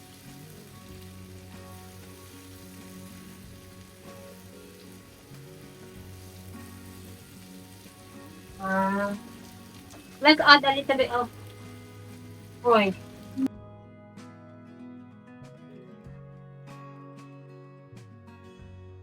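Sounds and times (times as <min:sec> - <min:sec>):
food sizzling: 0:00.0 - 0:13.5
soft background music: 0:00.0 - 0:19.0.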